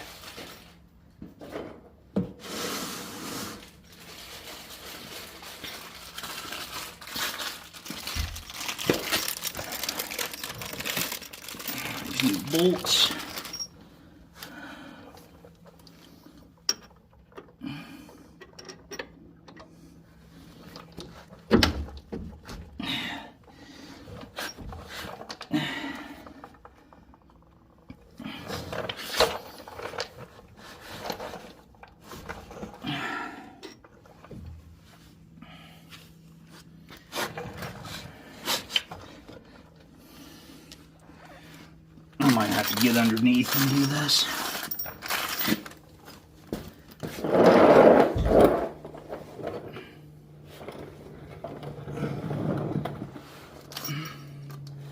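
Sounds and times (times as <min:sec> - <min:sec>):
faint steady hum: 0:00.0 - 0:54.9.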